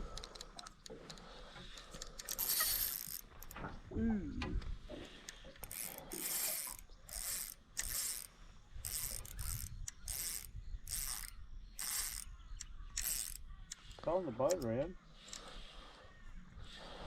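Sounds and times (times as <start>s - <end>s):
fishing reel clicking and whirring: 0.0s - 3.6s, 5.2s - 13.8s.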